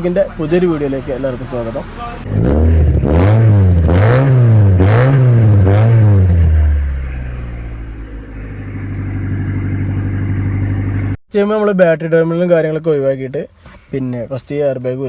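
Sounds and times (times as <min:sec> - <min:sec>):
engine revving: 0:00.1 - 0:11.2.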